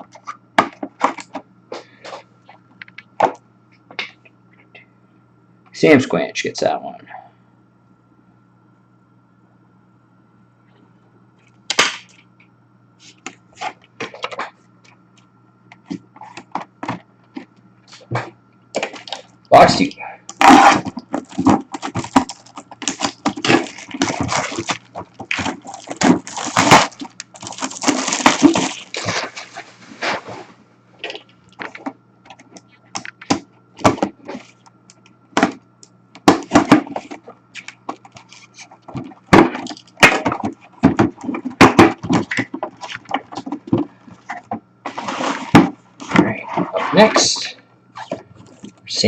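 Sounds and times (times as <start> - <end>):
packaging crackling and rustling: 20.3 - 30.3.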